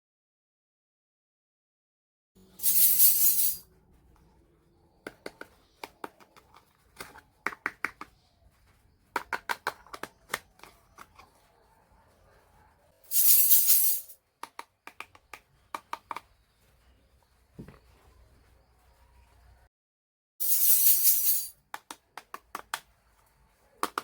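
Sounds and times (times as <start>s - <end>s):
toy kitchen pieces clicking: 5.0s - 11.4s, 13.2s - 16.4s, 20.6s - 22.9s, 23.7s - 24.0s.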